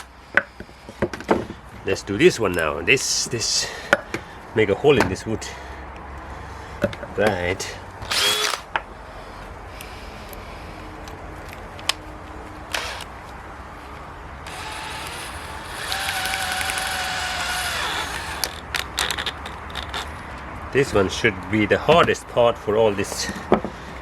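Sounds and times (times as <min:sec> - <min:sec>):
cordless drill whining: 0:08.0 - 0:08.7, 0:12.7 - 0:13.1, 0:14.4 - 0:20.0.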